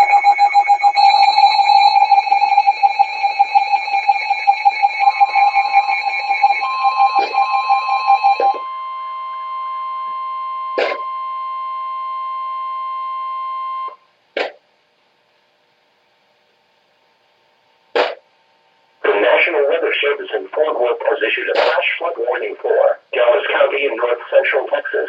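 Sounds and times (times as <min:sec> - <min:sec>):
rapidly pulsing alarm beep: 0:00.0 - 0:14.0
steady warning tone: 0:00.0 - 0:14.1.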